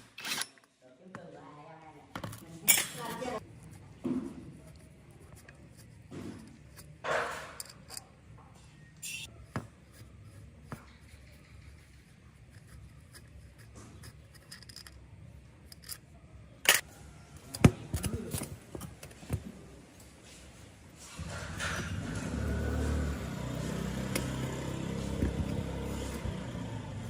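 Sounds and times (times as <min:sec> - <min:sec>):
tools and metal parts clicking: 0:00.0 - 0:00.7, 0:02.2 - 0:03.7, 0:04.7 - 0:08.2, 0:10.6 - 0:19.3.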